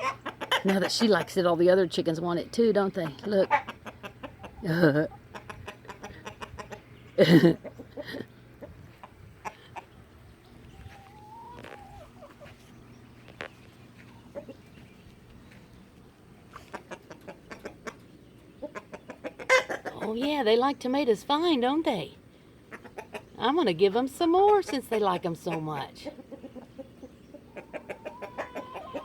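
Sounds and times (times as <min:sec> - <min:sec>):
hens clucking: 0:00.0 - 0:29.0.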